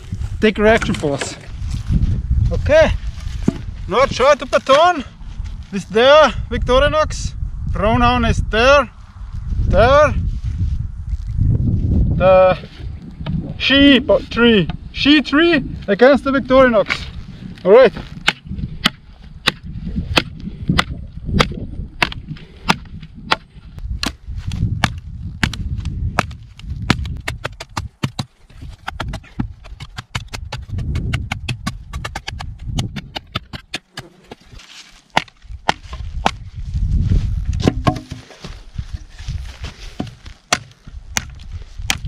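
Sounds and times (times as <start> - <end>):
knife chopping wood: 18.0 - 24.2, 24.8 - 36.4, 37.6 - 38.6, 39.9 - 42.0.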